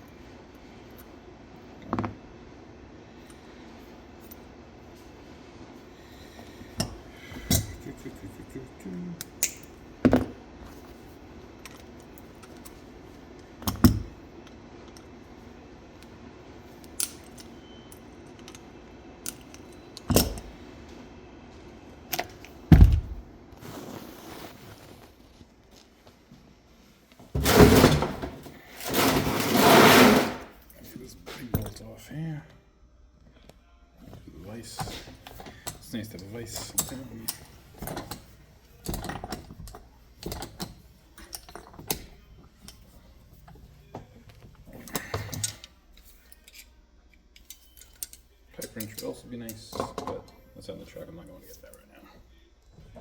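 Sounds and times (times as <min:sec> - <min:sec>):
metal scraping and rattling: 0:27.4 - 0:30.6
metal tools knocking and clinking: 0:34.8 - 0:42.9.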